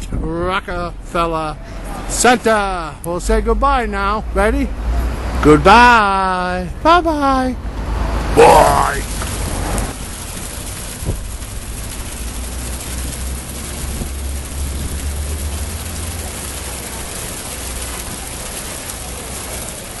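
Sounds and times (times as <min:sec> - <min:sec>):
low outdoor rumble: 0:06.6 - 0:20.0.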